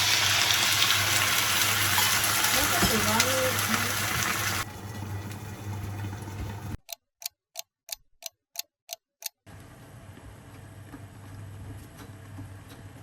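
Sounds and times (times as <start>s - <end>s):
kitchen noise: 0.1s - 6.8s.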